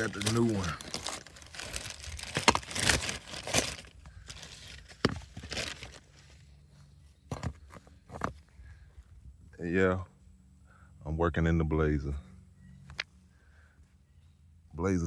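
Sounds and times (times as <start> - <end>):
packaging crinkling and rustling: 0.0 - 6.4.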